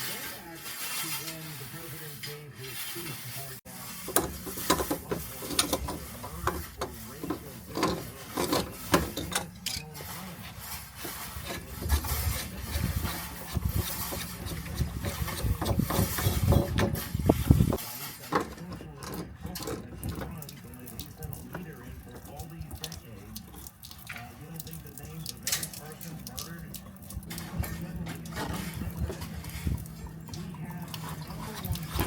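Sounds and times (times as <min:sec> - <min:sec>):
tools knocking and scraping: 0:03.8 - 0:20.5, 0:27.2 - 0:32.0.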